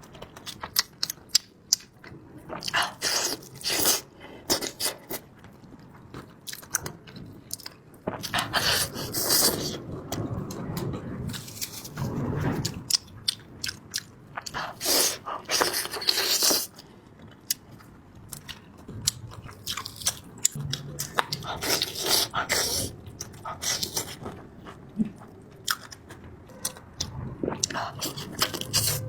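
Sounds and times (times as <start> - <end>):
crunchy chewing and biting: 12.6 - 17.8, 18.4 - 29.0.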